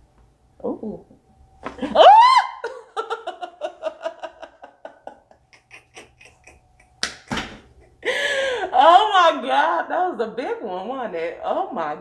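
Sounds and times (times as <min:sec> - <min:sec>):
person laughing: 0:01.8 - 0:08.7.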